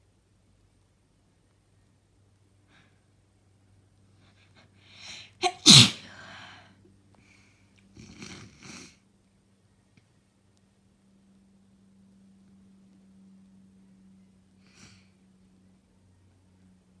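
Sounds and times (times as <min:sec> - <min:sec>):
soft breaths or sniffs: 0:04.9 - 0:06.6
person sneezing: 0:05.4 - 0:06.2.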